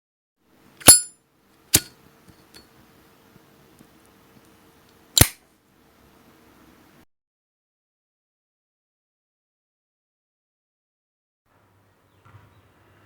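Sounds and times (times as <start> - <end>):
faint steady hum: 0.4 - 7.0
lighter lid snapping: 1.8 - 2.6, 5.2 - 5.4.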